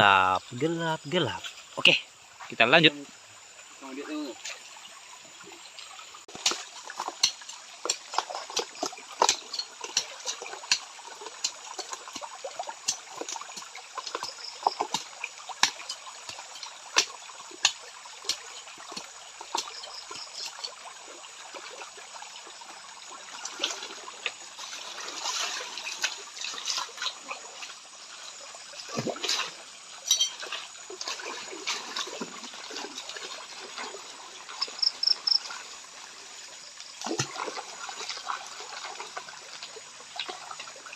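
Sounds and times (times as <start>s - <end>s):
running water trickling: 0.0s - 40.9s
water sloshing in a pan: 3.2s - 40.9s.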